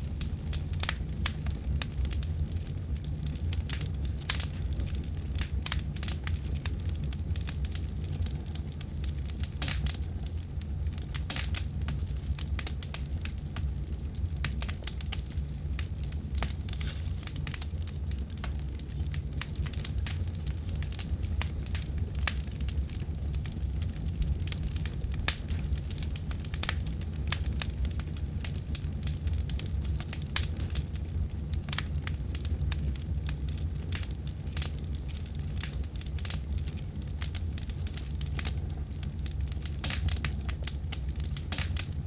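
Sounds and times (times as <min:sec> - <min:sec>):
fire crackling and popping: 0:00.0 - 0:42.0
fire rumbling: 0:00.0 - 0:42.0.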